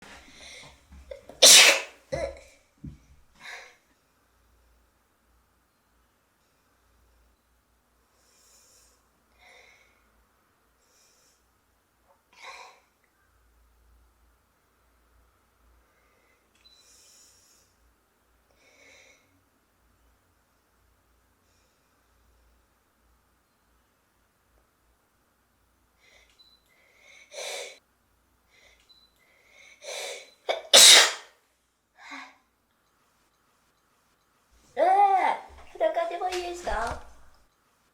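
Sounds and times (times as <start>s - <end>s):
sharp burst of breath: 1.4s - 1.9s, 26.1s - 27.8s, 29.4s - 31.3s
woman sneezing: 1.4s - 2.4s, 30.0s - 31.3s
woman sniffing and breathing: 26.0s - 27.8s.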